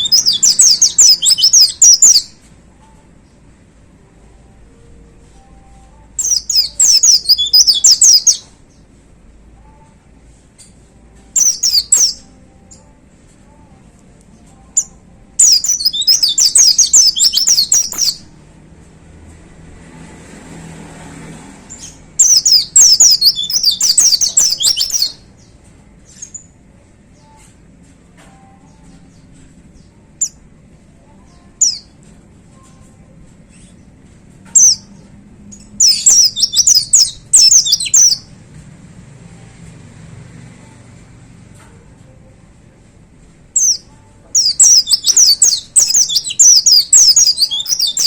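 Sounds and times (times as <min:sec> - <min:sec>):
bird twittering: 0:00.0 - 0:02.3, 0:06.2 - 0:08.5, 0:11.4 - 0:12.3, 0:14.8 - 0:18.2, 0:21.8 - 0:25.2, 0:35.8 - 0:38.2, 0:44.4 - 0:48.0.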